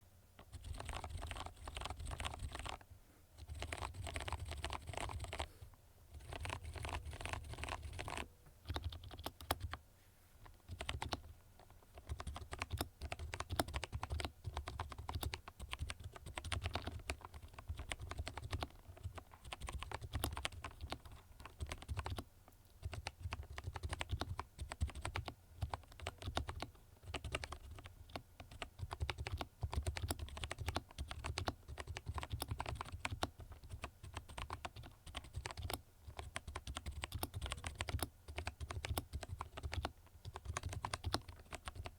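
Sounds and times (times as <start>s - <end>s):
mechanical keyboard typing: 0.4s - 2.8s, 3.4s - 5.5s, 6.1s - 9.8s, 10.4s - 41.9s.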